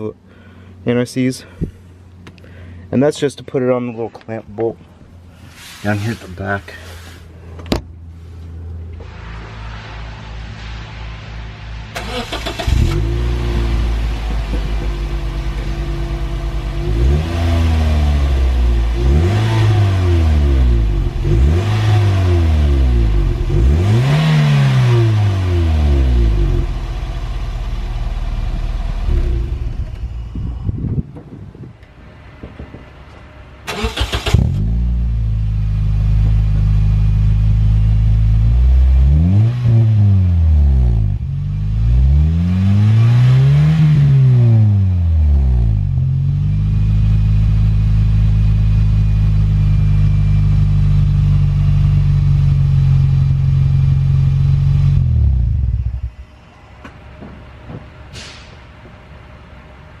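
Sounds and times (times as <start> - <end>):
engine revving: 10.6 - 30.5, 33.7 - 36.4, 37.0 - 48.9
car engine starting and idling: 11.8 - 39.6.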